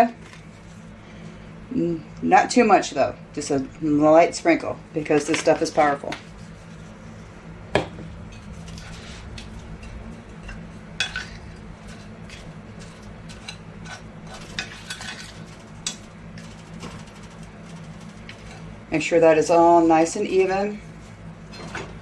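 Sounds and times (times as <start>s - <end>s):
low steady hum: 0.0s - 22.0s
utensil stirring and clinking bowl: 8.3s - 18.7s.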